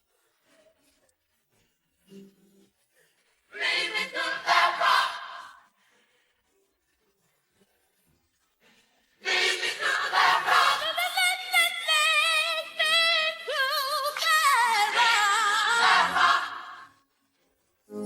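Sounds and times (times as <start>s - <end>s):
gospel choir singing a cappella: 3.5s - 5.7s, 9.2s - 17.0s.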